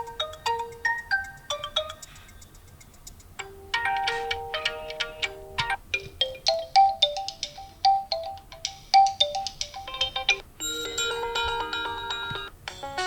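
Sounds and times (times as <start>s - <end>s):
ringtone melody of bright notes: 0.0s - 2.8s, 3.4s - 13.0s
ringtone with held layered tones: 0.0s - 13.0s.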